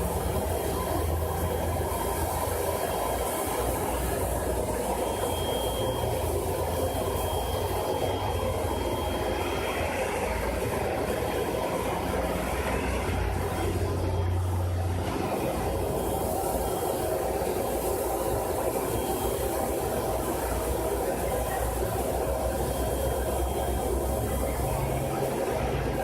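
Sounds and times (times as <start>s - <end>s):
faint high whistle: 5.0s - 9.2s.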